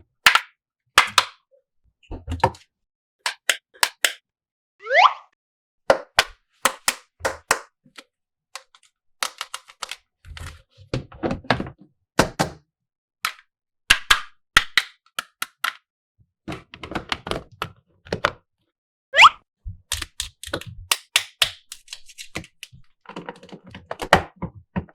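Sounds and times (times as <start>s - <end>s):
plastic toy pieces clicking: 3.3s - 4.2s, 8.6s - 10.0s, 14.0s - 15.8s, 19.9s - 22.7s.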